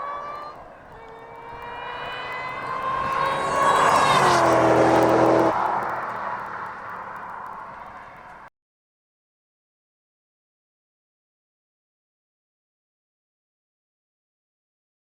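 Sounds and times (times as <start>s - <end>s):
car accelerating past: 0.0s - 8.5s.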